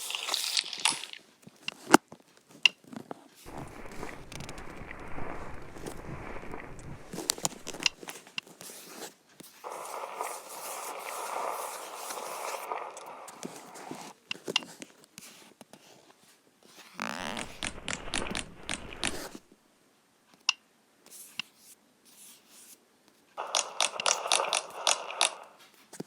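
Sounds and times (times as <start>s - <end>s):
wet squishing: 3.5s - 8.0s, 17.0s - 19.4s.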